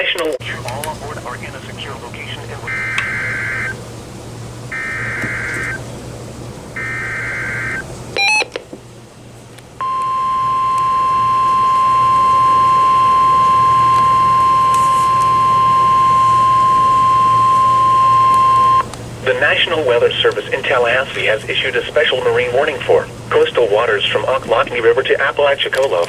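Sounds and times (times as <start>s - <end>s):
steady warning alarm tone: 0.4s - 8.4s, 9.8s - 25.2s
digital data bursts: 1.3s - 3.8s, 4.7s - 5.8s, 6.8s - 8.4s, 9.8s - 19.7s
rising run of beeps: 2.6s - 3.8s, 4.7s - 5.8s, 6.8s - 8.4s, 9.8s - 18.9s.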